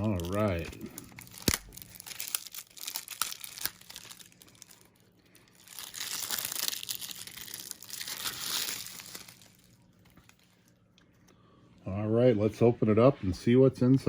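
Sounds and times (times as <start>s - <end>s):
shrink wrap crinkling and tearing: 0.0s - 10.9s.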